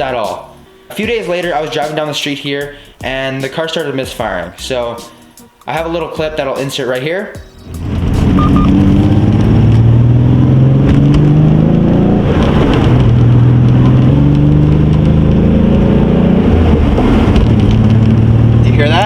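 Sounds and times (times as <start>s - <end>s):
car engine misfiring: 7.6s - 18.8s.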